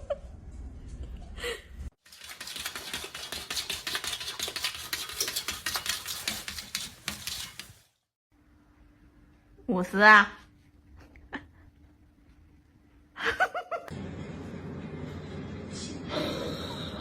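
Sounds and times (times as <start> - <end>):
rapid small clicks and scrapes: 2.0 - 8.0.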